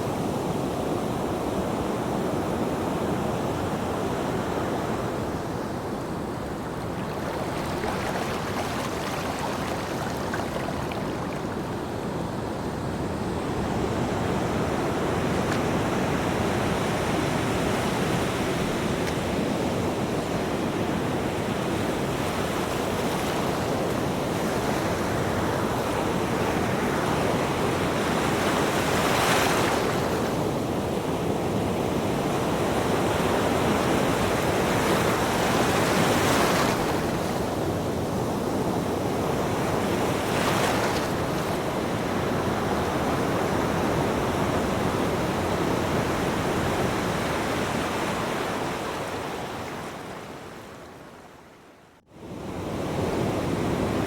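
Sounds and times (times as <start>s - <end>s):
ocean waves breaking: 4.3s - 30.6s.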